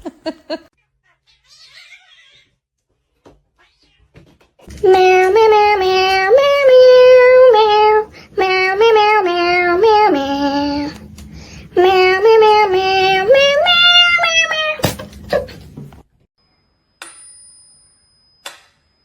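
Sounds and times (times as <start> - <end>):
high voice singing: 4.7 - 11.0, 11.6 - 14.9.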